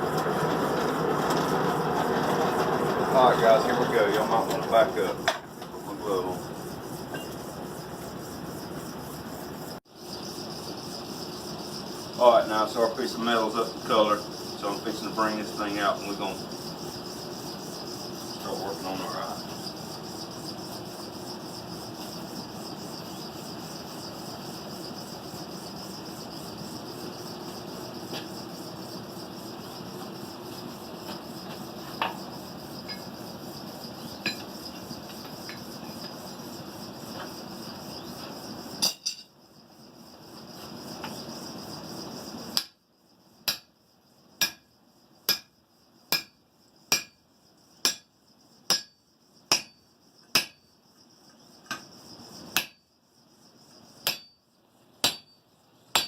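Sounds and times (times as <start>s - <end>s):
hammer striking hot steel: 34.2s - 34.4s, 43.5s - 43.7s, 44.4s - 44.7s, 45.3s - 45.5s, 46.1s - 47.2s, 47.8s - 48.1s, 48.7s - 50.6s, 52.6s - 52.8s, 54.0s - 54.4s, 55.0s - 55.3s
metal clang: 38.8s - 39.3s.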